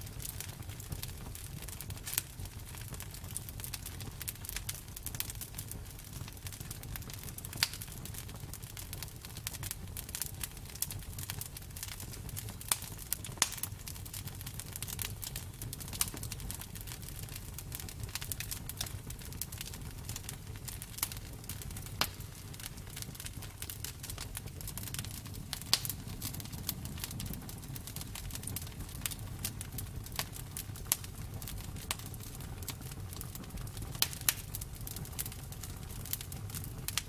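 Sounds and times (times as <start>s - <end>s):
campfire crackling: 0.0s - 37.0s.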